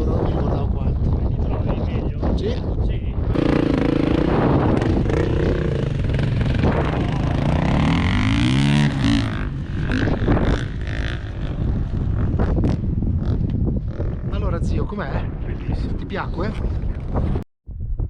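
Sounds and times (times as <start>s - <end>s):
motorcycle engine revving: 3.3s - 14.5s.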